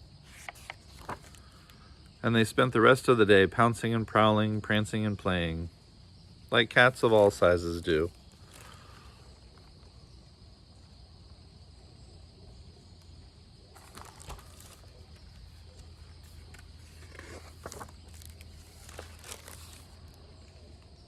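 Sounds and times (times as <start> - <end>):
rustling and handling noises: 0.2 - 1.7, 8.1 - 9.8, 13.8 - 20.3.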